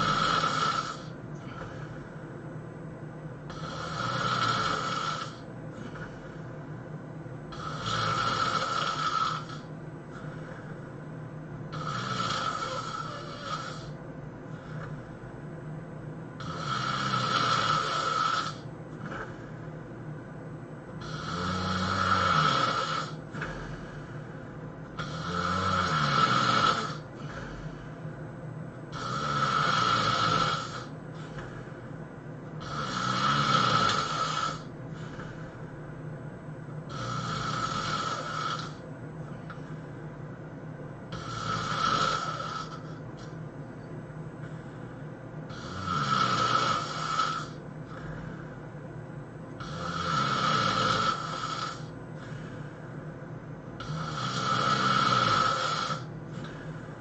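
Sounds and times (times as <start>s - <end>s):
person snoring heavily: 0.0s - 2.1s, 3.5s - 6.4s, 7.5s - 10.6s, 11.7s - 14.9s, 16.4s - 19.6s, 21.0s - 24.3s, 25.0s - 27.9s, 28.9s - 31.8s, 32.6s - 35.7s, 36.9s - 38.8s, 41.1s - 43.0s, 45.5s - 48.5s, 49.6s - 52.8s, 53.8s - 57.0s
low hum: 9.6s - 11.8s, 13.9s - 16.5s, 34.7s - 36.9s.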